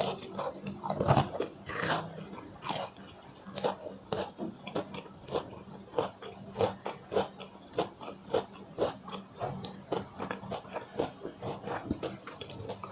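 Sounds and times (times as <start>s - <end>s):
chewing food: 0.0s - 12.9s.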